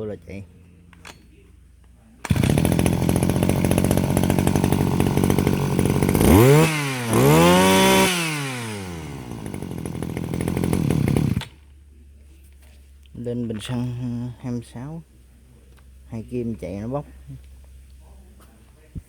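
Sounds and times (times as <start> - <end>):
brush cutter engine revving: 2.2 - 11.6.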